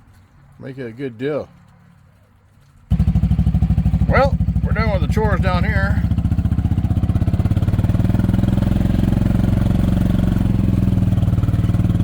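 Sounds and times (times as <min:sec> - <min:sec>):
golf cart engine running: 0:02.9 - 0:12.0.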